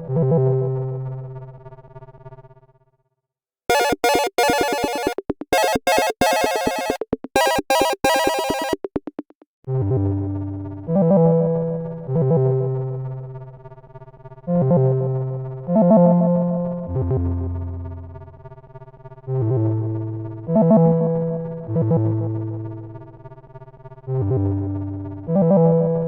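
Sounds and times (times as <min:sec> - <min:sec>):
electric piano phone ringtone: 0:03.7 - 0:09.3.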